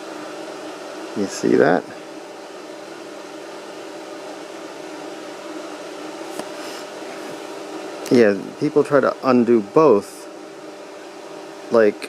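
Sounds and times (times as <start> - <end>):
machine humming: 0.0 - 12.0.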